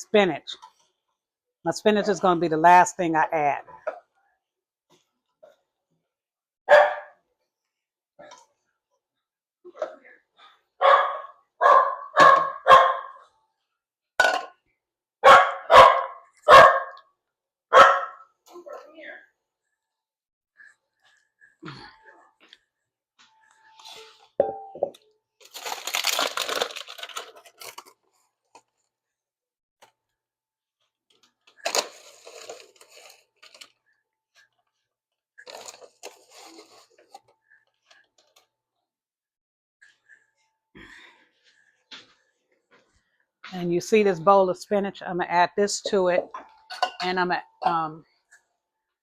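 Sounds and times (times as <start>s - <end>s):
dog barking: 6.7s - 7.2s, 10.8s - 13.2s, 15.2s - 17.0s, 17.7s - 18.2s
crinkling and rustling: 25.4s - 29.2s, 30.8s - 38.8s.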